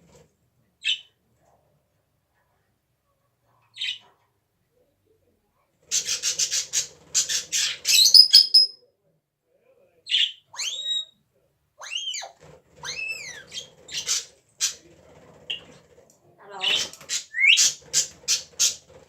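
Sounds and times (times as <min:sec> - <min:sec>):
parrot squawk: 0:07.7 - 0:08.8
parrot whistles sliding in pitch: 0:08.0 - 0:08.8.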